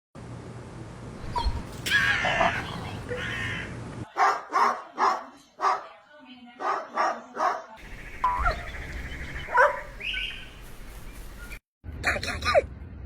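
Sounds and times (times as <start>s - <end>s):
puppy yipping: 1.3s - 1.7s.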